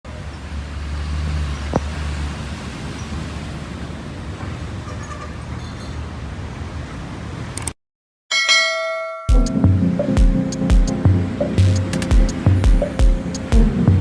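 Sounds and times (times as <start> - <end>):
road noise: 0.0 - 7.8, 9.4 - 14.0
vehicle engine rumble: 0.1 - 7.7.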